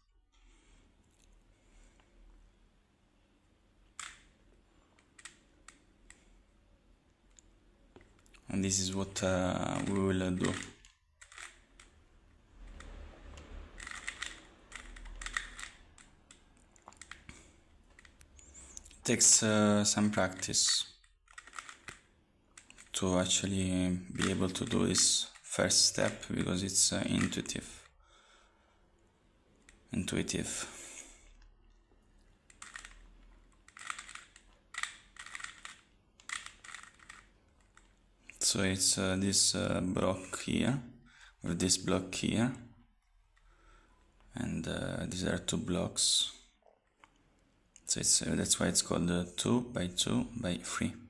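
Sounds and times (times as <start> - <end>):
plastic puzzle cube clicking: 4.0 - 4.3, 5.2 - 6.2, 9.8 - 11.9, 13.8 - 17.3, 21.3 - 22.0, 22.6 - 22.9, 32.5 - 33.0, 33.6 - 37.9.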